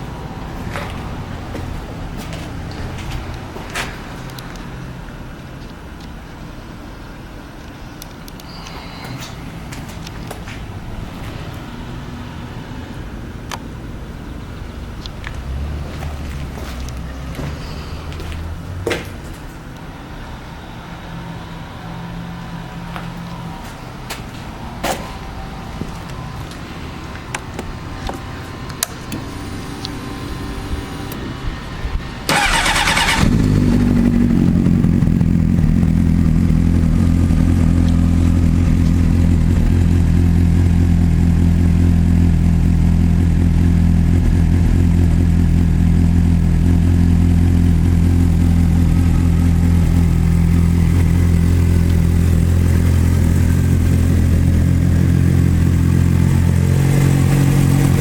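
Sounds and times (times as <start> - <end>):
starter motor whir: 32.3 - 34.7
motorcycle engine idling loudly: 32.4 - 58.0.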